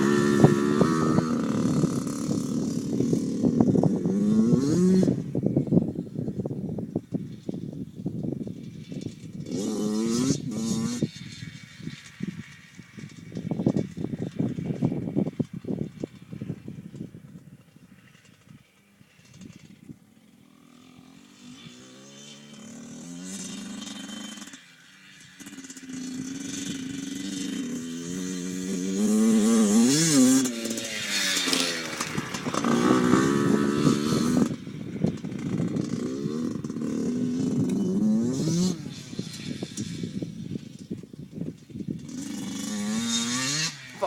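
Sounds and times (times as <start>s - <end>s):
dirt bike engine revving: 0.0s - 5.6s, 8.5s - 17.0s, 17.9s - 44.0s.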